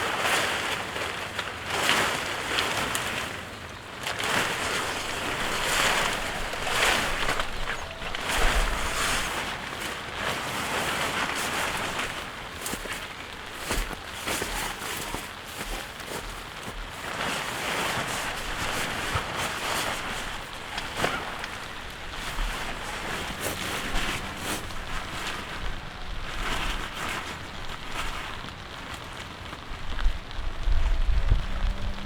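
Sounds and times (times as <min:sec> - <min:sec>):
light rain falling: 0:00.0 - 0:32.0
wind puffs on microphone: 0:04.1 - 0:28.7, 0:29.6 - 0:32.0.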